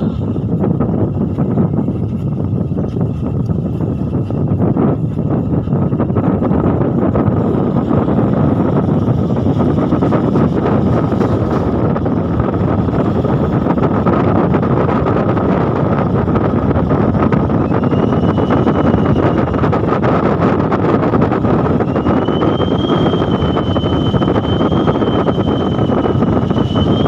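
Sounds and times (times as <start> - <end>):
vehicle moving on road: 0.0 - 27.0
wind buffeting microphone: 0.0 - 27.0.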